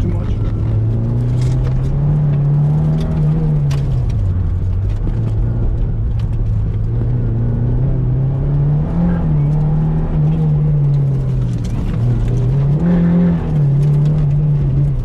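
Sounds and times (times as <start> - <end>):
car engine revving hard: 7.0 - 15.0.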